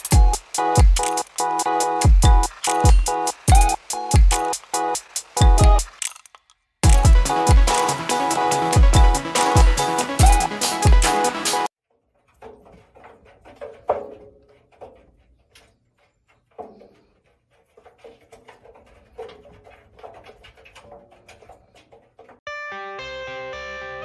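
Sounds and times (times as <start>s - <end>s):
dog whining: 9.4s - 10.6s.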